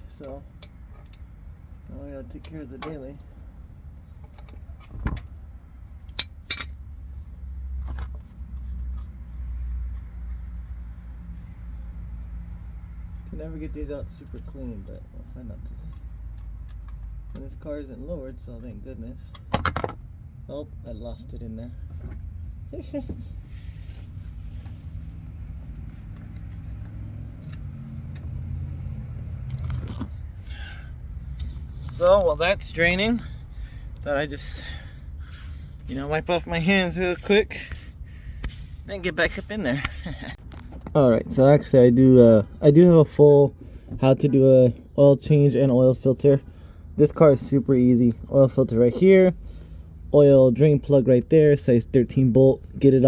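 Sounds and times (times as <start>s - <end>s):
vehicle engine rumbling: 0.0s - 53.0s
sharp metallic clinks: 6.2s - 6.8s
low rumbling handling noise: 21.9s - 34.2s.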